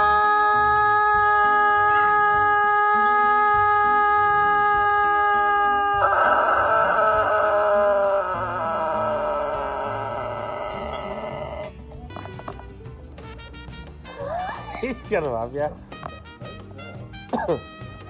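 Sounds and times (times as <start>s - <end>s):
rooster crowing: 0.0s - 11.7s
background music with bass line: 0.0s - 18.0s.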